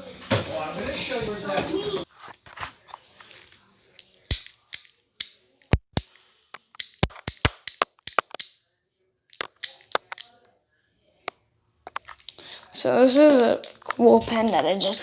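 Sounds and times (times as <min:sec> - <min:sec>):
sharp clicks and knocks: 0:04.3 - 0:08.5, 0:09.4 - 0:10.3, 0:11.9 - 0:12.2.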